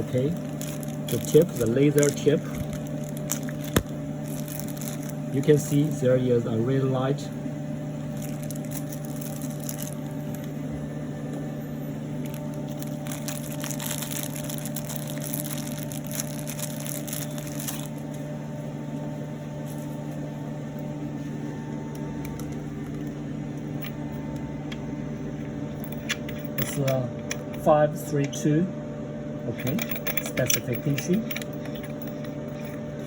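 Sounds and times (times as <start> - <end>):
laser machine humming: 0.0 - 25.9.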